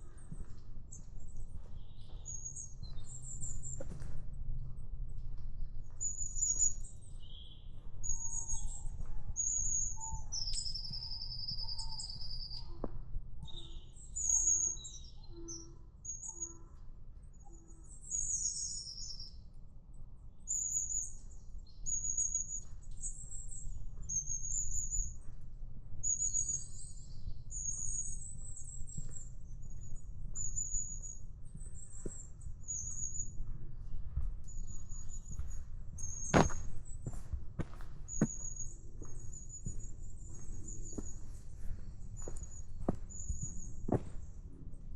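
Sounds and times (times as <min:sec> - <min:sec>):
high-pitched bird calls: 0:13.4 - 0:16.8.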